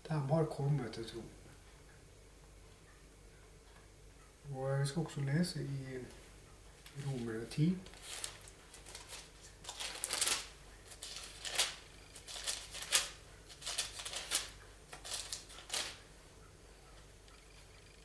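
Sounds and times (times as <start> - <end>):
thin pages rustling and flipping: 6.8 - 16.1.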